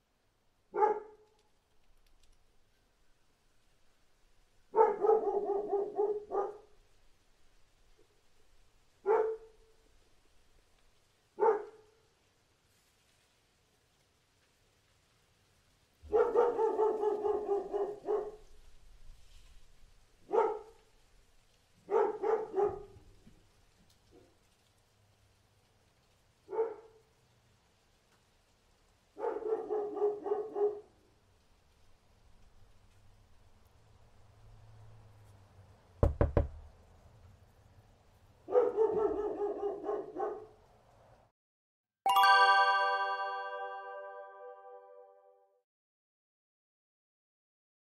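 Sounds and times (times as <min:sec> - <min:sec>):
dog barking: 0:00.7 - 0:01.3, 0:04.7 - 0:06.8, 0:09.0 - 0:09.7, 0:11.4 - 0:12.1, 0:16.0 - 0:18.6, 0:20.2 - 0:20.9, 0:21.8 - 0:23.1, 0:26.5 - 0:27.1, 0:29.2 - 0:31.0, 0:38.5 - 0:40.6
quick knocks: 0:36.0 - 0:36.7
ringing bell strike: 0:42.1 - 0:45.0.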